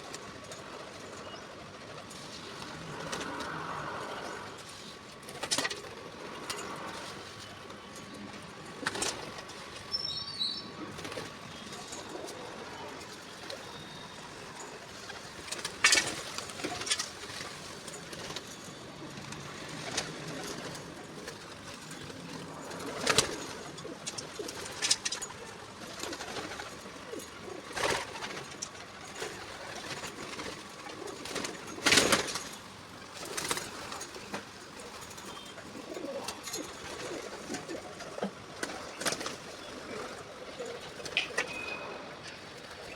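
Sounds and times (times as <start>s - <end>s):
pigeons cooing: 10.6s - 42.9s.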